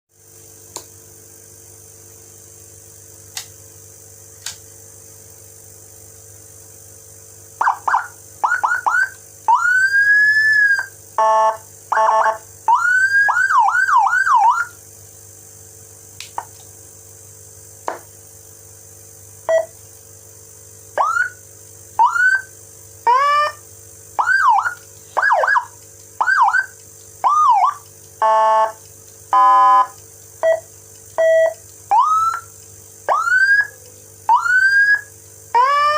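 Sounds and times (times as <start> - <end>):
steady low hum: 0.1 - 35.9
electronic siren chirps and wails: 7.6 - 14.8, 21.0 - 21.4, 22.0 - 22.5, 23.1 - 23.6, 24.2 - 30.6, 31.2 - 32.5, 33.1 - 35.9.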